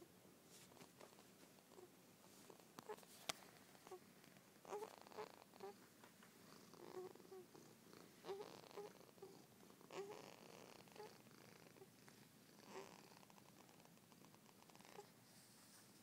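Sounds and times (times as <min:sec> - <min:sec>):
baby whimpering and grunting: 0:08.2 - 0:11.2.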